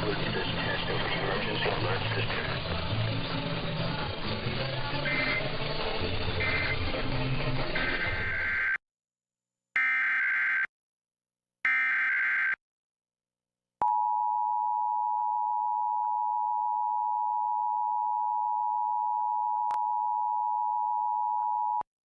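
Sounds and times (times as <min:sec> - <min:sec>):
harsh digital data bursts: 0:02.0 - 0:08.8.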